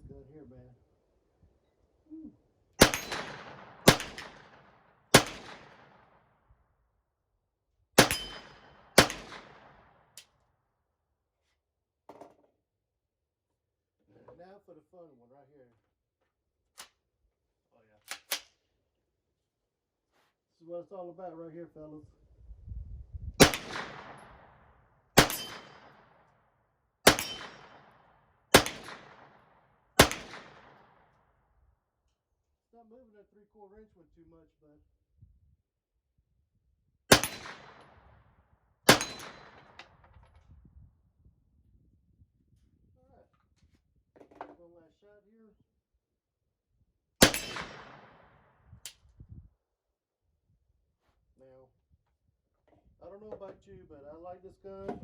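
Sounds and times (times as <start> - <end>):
metallic ring of steel targets: 2.8 - 3.4, 8.0 - 8.6, 25.2 - 25.9, 27.1 - 27.6, 38.9 - 39.8, 47.2 - 47.7
gunshots: 2.8 - 6.2, 8.0 - 9.9, 23.4 - 24.4, 25.2 - 26.2, 27.0 - 31.0, 37.1 - 38.0, 38.9 - 39.8, 47.2 - 48.5.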